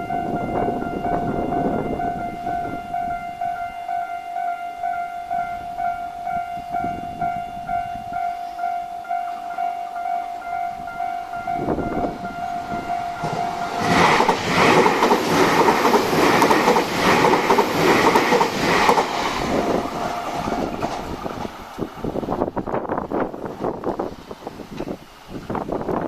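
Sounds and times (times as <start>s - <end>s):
crossing alarm tone: 0.0s - 16.0s
train rushing past: 5.3s - 26.0s
train wheels clacking: 11.6s - 22.2s.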